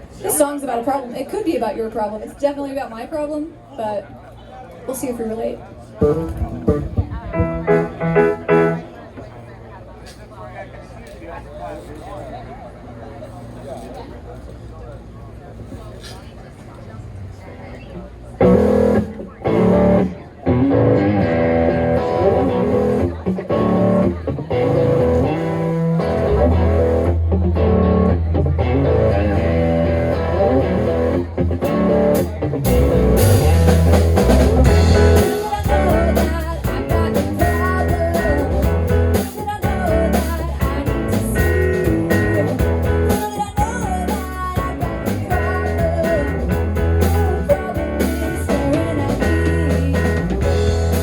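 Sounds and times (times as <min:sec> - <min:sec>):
guitar lines: 0:04.9 - 0:09.3, 0:18.4 - 0:51.0
deep bass notes: 0:06.0 - 0:09.0, 0:18.4 - 0:51.0
live rock band playing: 0:06.0 - 0:09.0, 0:18.4 - 0:51.0.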